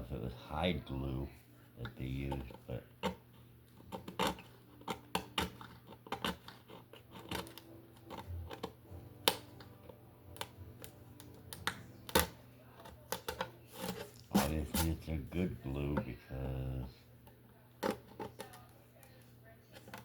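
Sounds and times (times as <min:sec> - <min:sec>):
small objects clicking and tapping: 0:01.8 - 0:14.0.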